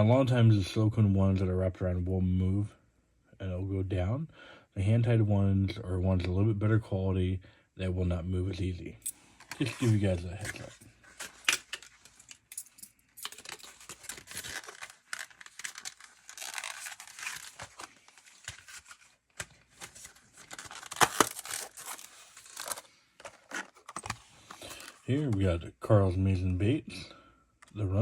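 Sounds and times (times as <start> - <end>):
plastic packaging crinkling and tearing: 13.3 - 25.4.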